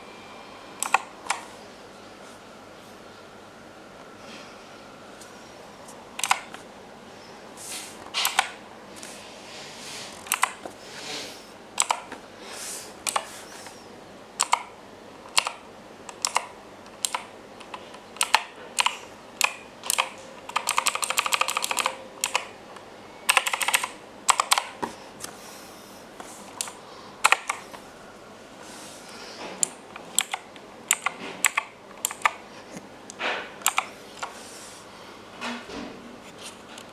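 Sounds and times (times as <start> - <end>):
mechanical keyboard keystrokes: 0.8 - 1.4, 6.2 - 6.6, 8.2 - 8.6, 10.2 - 10.6, 11.8 - 12.2, 13.0 - 13.3, 14.4 - 14.7, 15.3 - 22.5, 23.3 - 24.8, 26.6 - 27.6, 29.6 - 32.4, 33.6 - 34.4.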